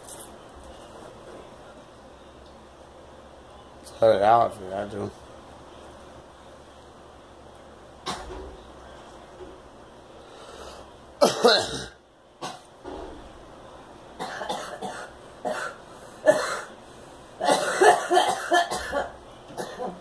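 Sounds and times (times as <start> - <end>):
girl coughing: 11.2 - 12.6, 14.2 - 16.7, 17.4 - 20.0.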